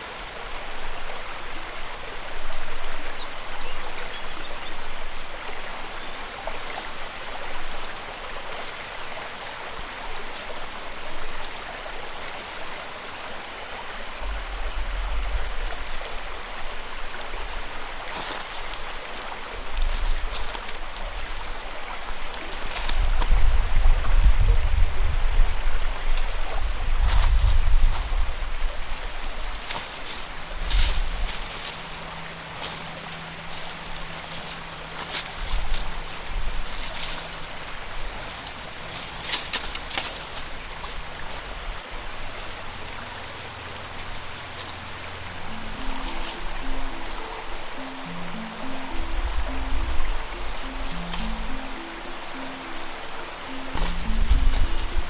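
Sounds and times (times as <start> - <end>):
river water flowing: 0.0 - 55.0
steady high whine: 0.0 - 55.0
low rumbles: 14.0 - 17.8.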